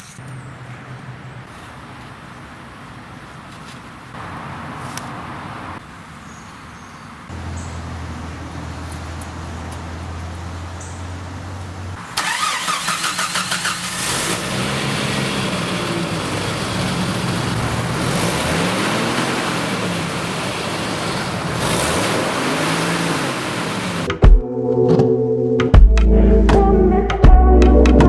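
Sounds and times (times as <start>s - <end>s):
car engine revving: 7.3s - 24.2s
car engine cranking on starter: 12.2s - 24.1s.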